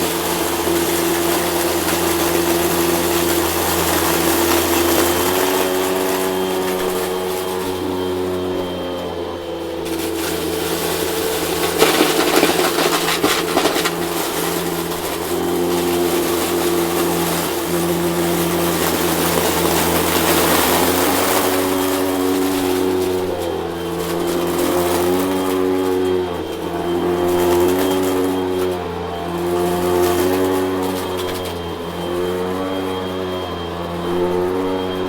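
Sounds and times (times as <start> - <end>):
rattling and crackling: 0.0 - 25.7
vacuum cleaner motor hum: 0.0 - 35.0.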